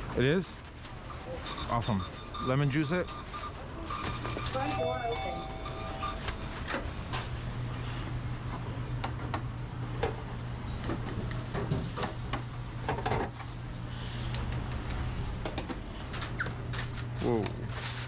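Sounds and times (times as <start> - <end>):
kitchen equipment hum: 4.1 - 18.0.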